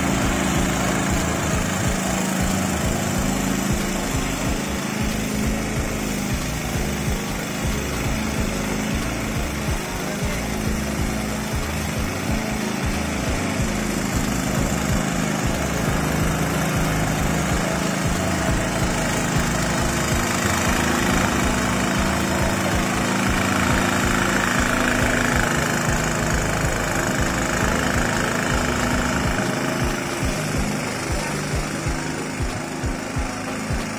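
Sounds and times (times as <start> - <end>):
grass cutter engine running: 0.0 - 33.9.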